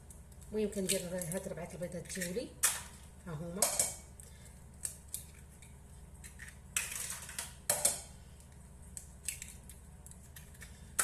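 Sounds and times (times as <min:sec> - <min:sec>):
eggs cracking against a bowl: 0:00.0 - 0:11.0.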